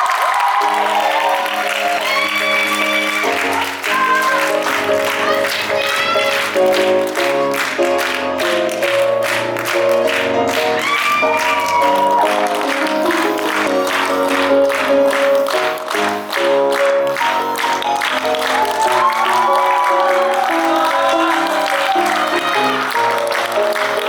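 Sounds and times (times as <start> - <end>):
audience clapping along: 0.0 - 24.0.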